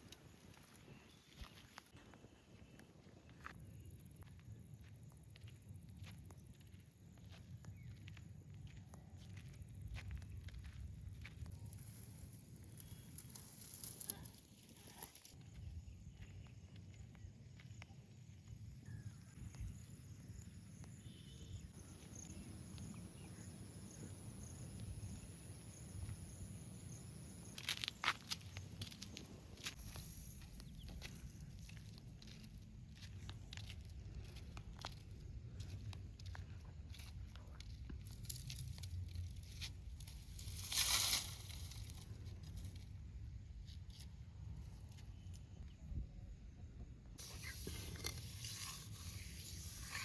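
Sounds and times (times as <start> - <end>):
faint chirps: 11.6 - 27.6
high insect drone: 18.8 - 29.0.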